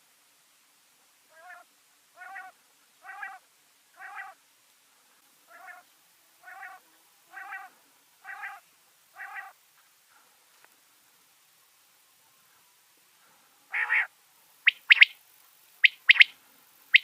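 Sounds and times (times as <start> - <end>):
quail mewing calls: 1.3 - 1.6, 2.2 - 3.4, 4.0 - 4.4, 5.5 - 8.6, 9.2 - 9.6, 13.7 - 15.2, 15.8 - 16.3.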